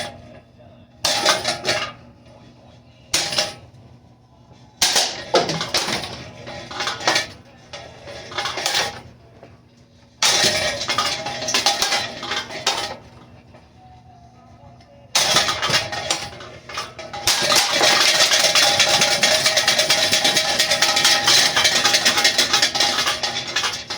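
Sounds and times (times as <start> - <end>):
metallic clattering and crashing: 1.1 - 2.0, 4.8 - 9.1, 10.2 - 13.1, 15.2 - 23.9.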